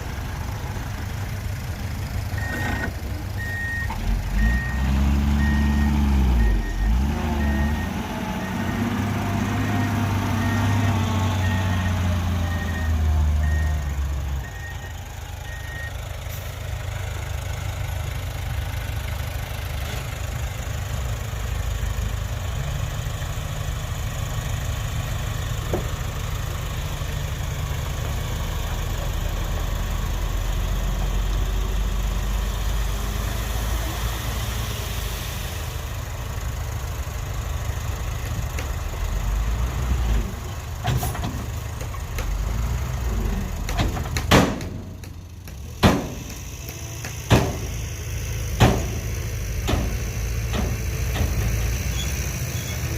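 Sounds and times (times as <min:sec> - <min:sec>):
heavy diesel engine rumbling: 0:00.0 - 0:52.9.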